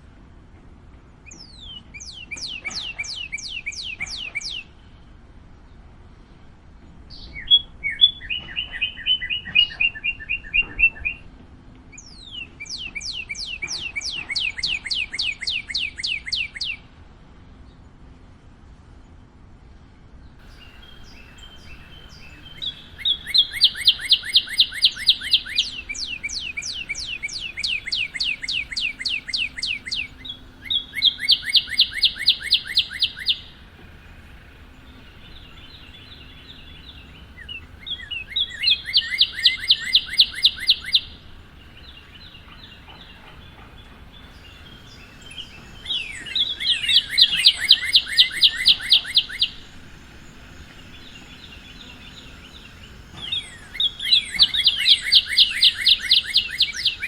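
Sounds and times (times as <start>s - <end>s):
bird singing slurred whistles: 1.3s - 4.8s, 7.1s - 11.2s, 11.9s - 16.8s, 20.4s - 57.0s.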